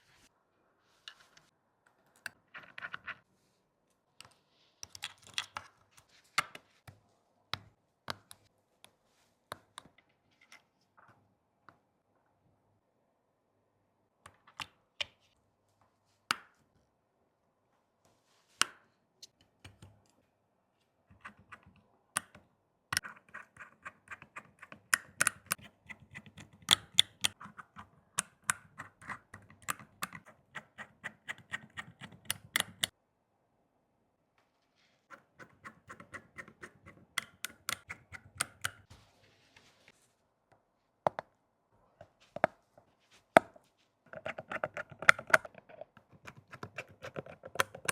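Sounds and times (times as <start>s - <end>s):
repair tools clicking and scraping: 44.1s - 47.9s.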